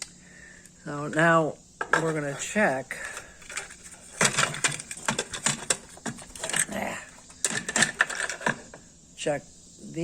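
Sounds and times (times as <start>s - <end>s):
plastic parts clicking together: 3.1s - 8.7s.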